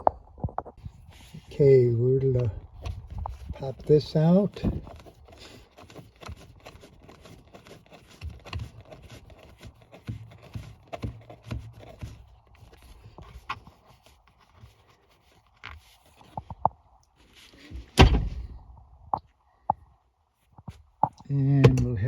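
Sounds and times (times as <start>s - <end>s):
plastic console parts clicking: 2.6s - 14.8s.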